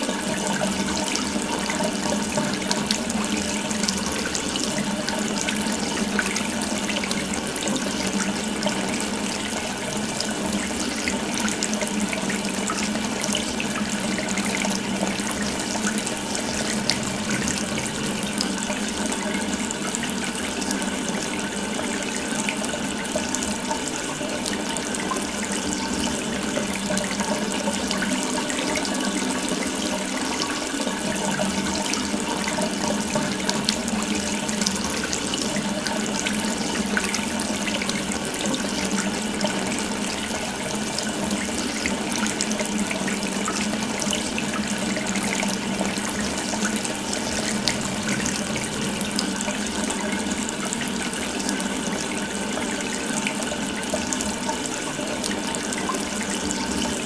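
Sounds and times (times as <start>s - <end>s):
water running from tap: 0.0s - 57.0s.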